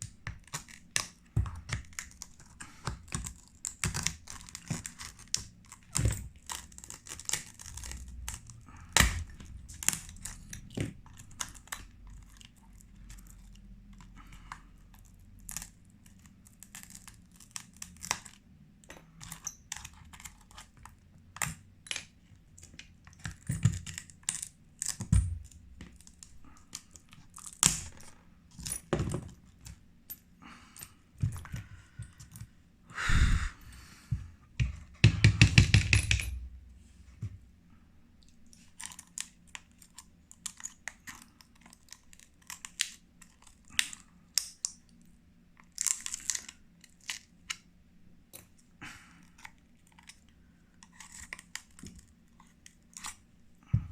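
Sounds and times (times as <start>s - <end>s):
glass cracking and clicking: 3.1s - 12.6s, 15.4s - 18.4s, 21.4s - 28.8s.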